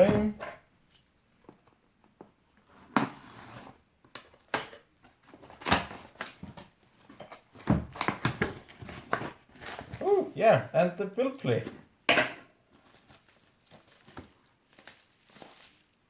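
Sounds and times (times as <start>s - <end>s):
packaging rustling: 12.7s - 16.0s.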